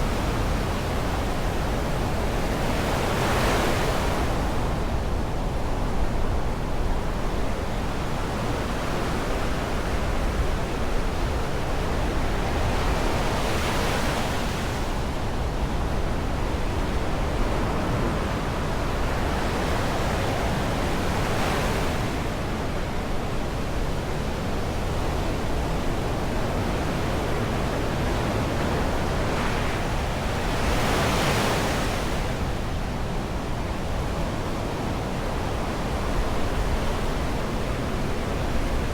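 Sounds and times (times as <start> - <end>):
waves breaking and washing in: 0.0 - 38.9
rush of surf: 9.2 - 38.9.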